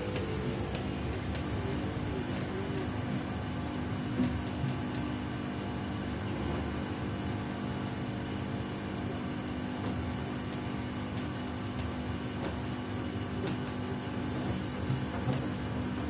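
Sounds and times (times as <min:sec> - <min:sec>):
sharp ticks: 0:00.0 - 0:05.1, 0:09.1 - 0:13.8
washing machine humming: 0:00.0 - 0:16.0.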